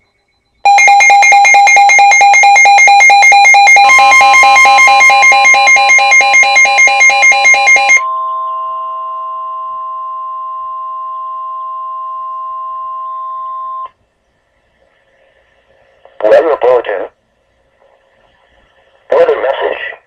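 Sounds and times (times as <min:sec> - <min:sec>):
emergency alert tones: 0:00.6 - 0:13.9.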